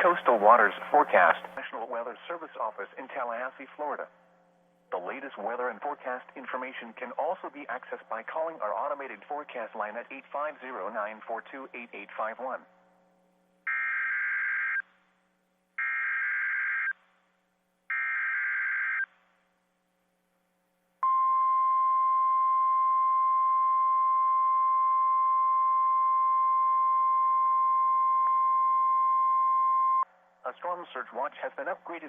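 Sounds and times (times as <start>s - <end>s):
steady single-pitch alert tone: 17.9s - 19.0s, 21.0s - 30.0s.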